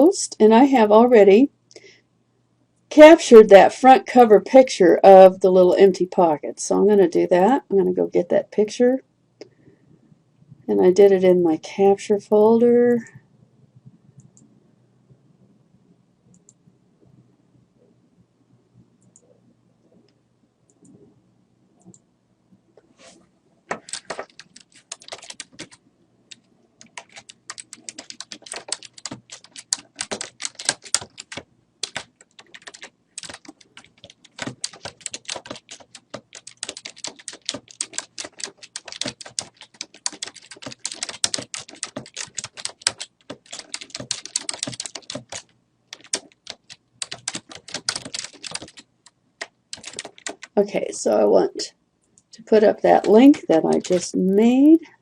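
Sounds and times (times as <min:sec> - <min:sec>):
computer keyboard typing: 0:23.7 - 0:50.6, 0:52.9 - 0:54.2.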